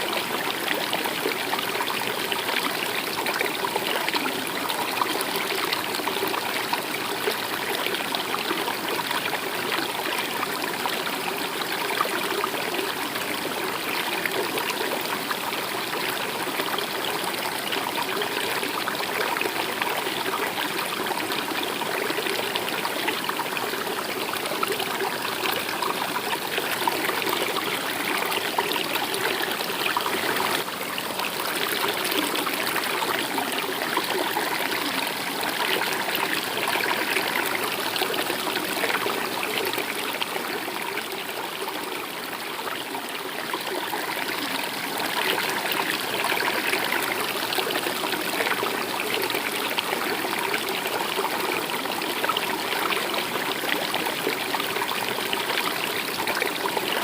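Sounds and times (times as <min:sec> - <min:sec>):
stream water trickling: 0:00.0 - 0:57.0.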